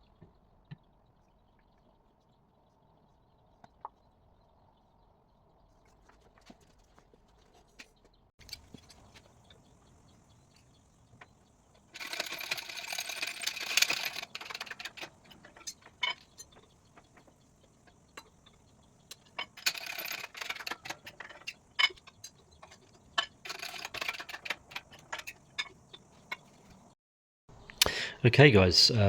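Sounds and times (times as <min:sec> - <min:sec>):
sharp clicks and knocks: 0:08.4 - 0:26.9
rapid mechanical clicking and rattling: 0:08.4 - 0:27.0.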